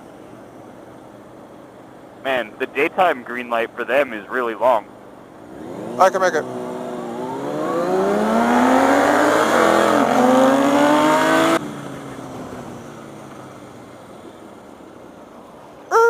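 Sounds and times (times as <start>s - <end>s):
motorcycle engine revving: 5.5s - 14.1s.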